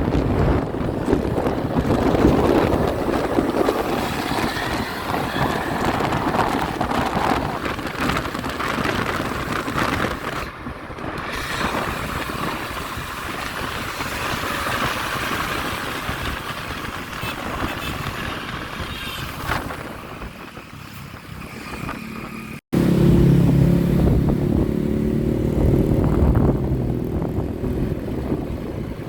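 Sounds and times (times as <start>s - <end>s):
traffic noise: 0.0s - 29.0s
wind rumbling on microphone: 0.0s - 29.0s.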